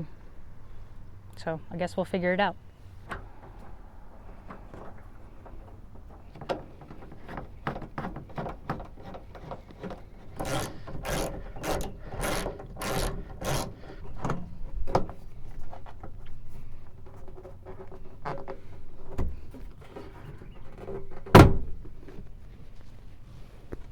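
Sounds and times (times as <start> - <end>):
rubbing scraping strokes: 3.3 - 14.2.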